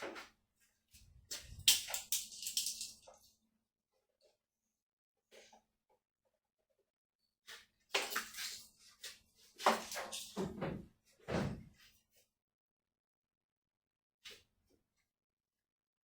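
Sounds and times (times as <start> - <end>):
clunks and knocks: 10.4 - 11.7.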